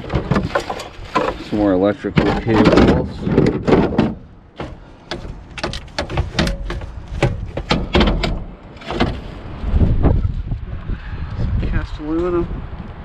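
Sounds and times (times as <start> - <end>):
scrap knocking and clanking: 0.0 - 9.6
wind rumble on microphone: 5.3 - 13.0.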